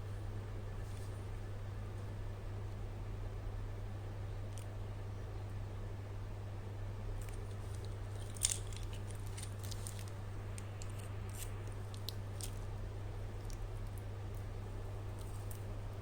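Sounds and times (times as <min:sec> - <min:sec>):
steady low hum: 0:00.0 - 0:16.0
handling clicks and crinkles: 0:07.2 - 0:16.0.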